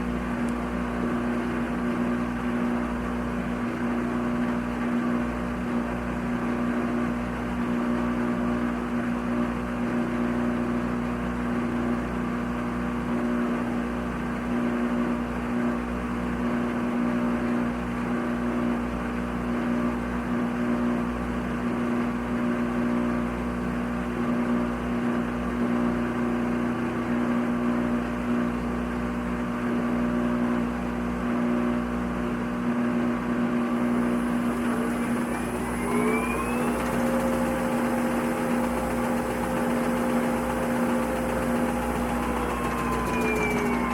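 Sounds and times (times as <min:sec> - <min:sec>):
washing machine motor hum: 0:00.0 - 0:43.9
rising motor whine: 0:33.7 - 0:43.9.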